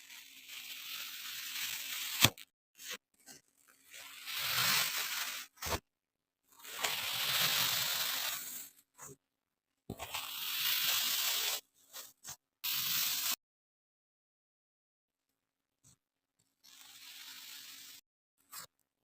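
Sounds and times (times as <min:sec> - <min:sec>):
sand crackling by hand: 0:06.7 - 0:08.6.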